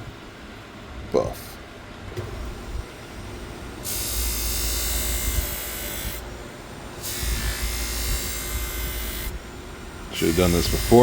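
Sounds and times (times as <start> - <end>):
buffing wheel motor running: 2.2 - 11.0
spinning wheel hissing: 10.1 - 11.0.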